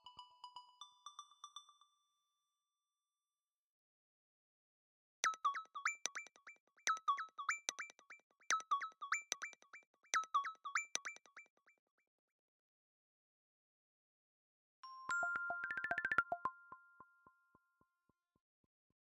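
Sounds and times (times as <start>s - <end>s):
synthesized ringtone notes: 15.1s - 17.1s.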